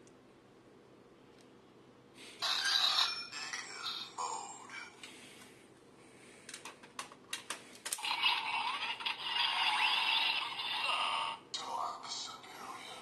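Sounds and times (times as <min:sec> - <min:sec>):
toy electronic sound effect: 0:02.4 - 0:04.2, 0:08.0 - 0:11.4.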